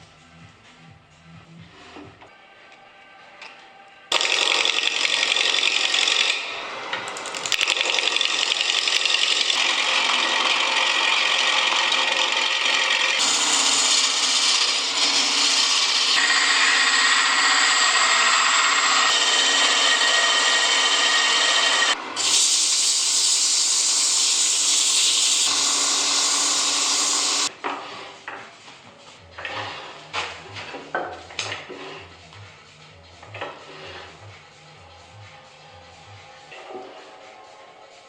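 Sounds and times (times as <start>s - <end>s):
power tools grinding wood: 4.1s - 28.1s.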